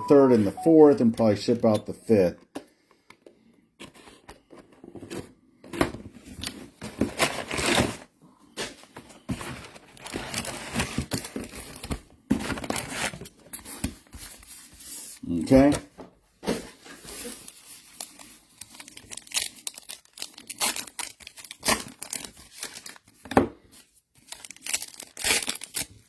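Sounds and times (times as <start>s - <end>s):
card wrappers torn and crinkled: 17.2s - 23.2s, 24.2s - 26.0s.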